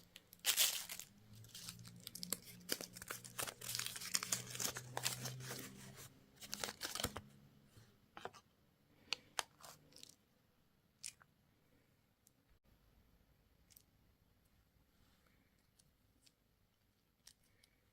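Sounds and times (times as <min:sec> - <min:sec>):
candy wrapper crackling: 0:00.0 - 0:05.8, 0:06.4 - 0:07.2.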